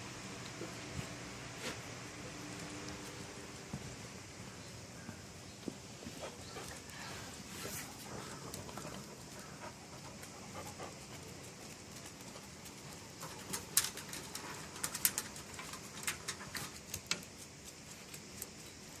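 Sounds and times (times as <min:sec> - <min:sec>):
dog panting: 0:06.1 - 0:13.4.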